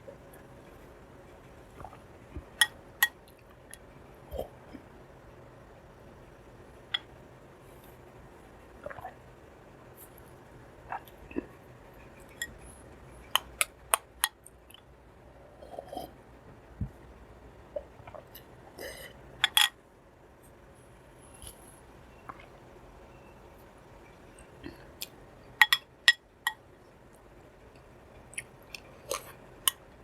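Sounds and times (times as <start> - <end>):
soft chewing: 17.7 - 19.1, 20.4 - 22.6, 26.5 - 29.9.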